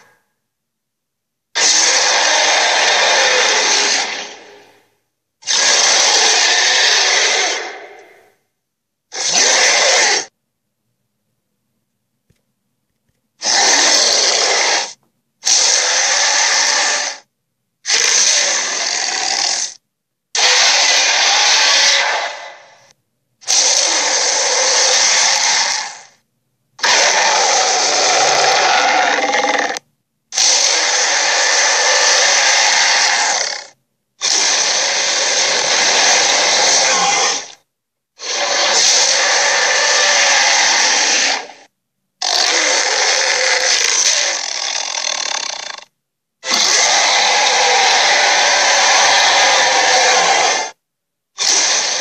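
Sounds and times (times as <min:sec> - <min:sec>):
harsh raspy creature sounds: 0:01.6 - 0:04.8, 0:05.4 - 0:08.3, 0:09.1 - 0:10.3, 0:13.4 - 0:19.8, 0:20.4 - 0:26.2, 0:26.8 - 0:37.6, 0:38.2 - 0:50.8, 0:51.4 - 0:52.0.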